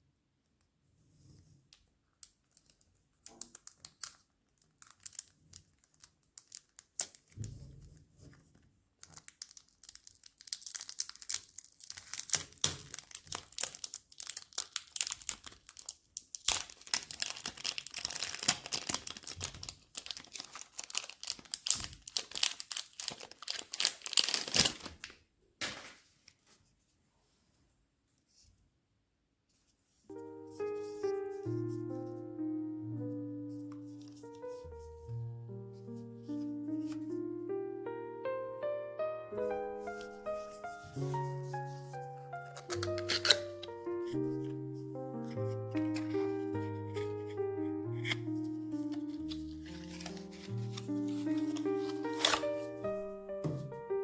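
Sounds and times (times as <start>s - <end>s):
packaging crinkling and tearing: 2.2s - 7.5s, 9.0s - 26.1s, 39.5s - 53.9s.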